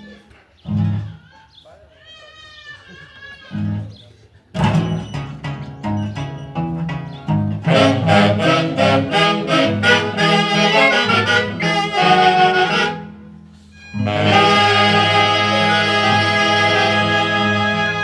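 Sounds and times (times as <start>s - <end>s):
folk orchestra playing: 7.4s - 18.0s.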